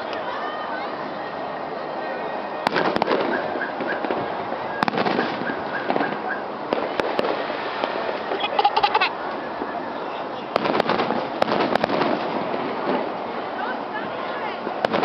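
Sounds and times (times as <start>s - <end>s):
fireworks bangs: 2.6s - 8.7s, 10.5s - 13.2s, 14.8s - 15.0s
fireworks crackling: 2.6s - 9.8s, 10.5s - 15.0s.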